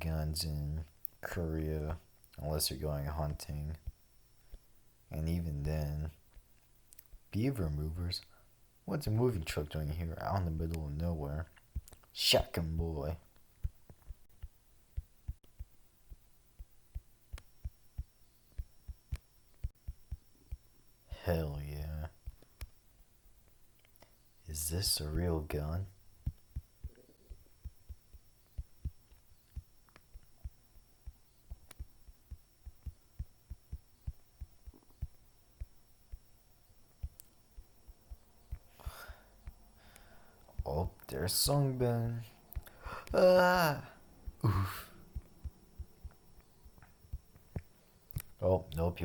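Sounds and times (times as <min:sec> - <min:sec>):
faint hum: 0:00.0 - 0:49.0
sharp clicks: 0:11.5 - 0:12.2, 0:26.0 - 0:41.6, 0:43.8 - 0:48.8
soft low thumps: 0:13.2 - 0:21.2, 0:24.7 - 0:41.6, 0:43.8 - 0:48.7.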